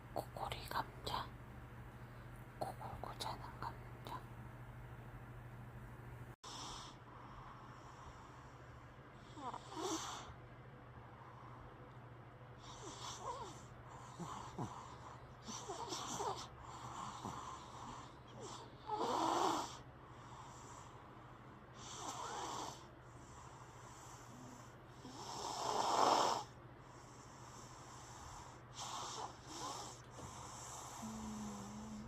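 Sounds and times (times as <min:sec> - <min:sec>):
person snoring: 0:23.9 - 0:26.6, 0:27.5 - 0:32.0.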